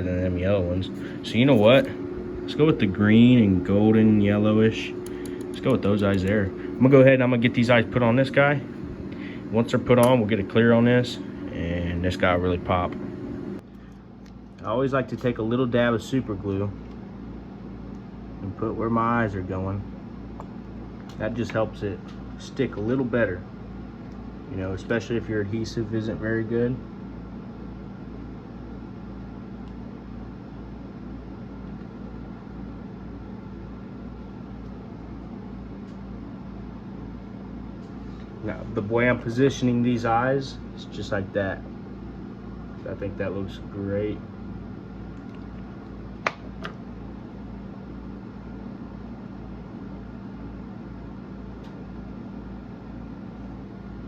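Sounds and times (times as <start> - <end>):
machine hum with throb: 0.0 - 14.6
mechanical room hum: 0.0 - 54.0.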